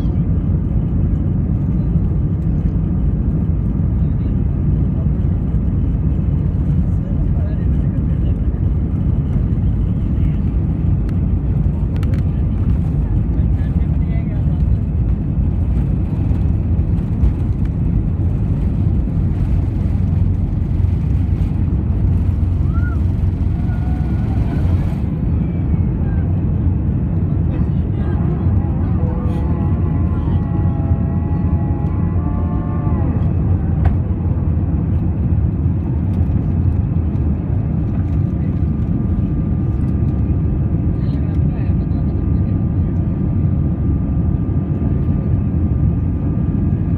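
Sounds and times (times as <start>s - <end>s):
jet engine cabin rumble: 0.0s - 46.9s.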